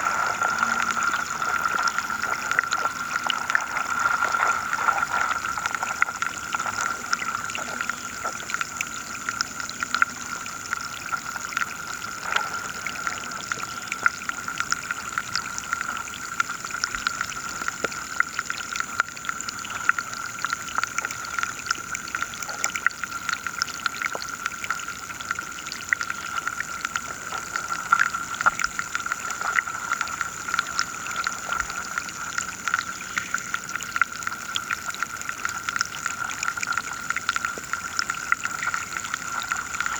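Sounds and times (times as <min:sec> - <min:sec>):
steady high-pitched tones: 0:00.0 - 0:10.6
underwater clicking and crackling: 0:00.0 - 0:39.9.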